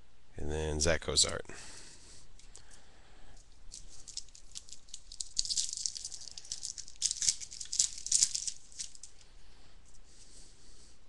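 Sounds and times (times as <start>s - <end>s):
foil wrapper crinkling: 3.4s - 9.3s.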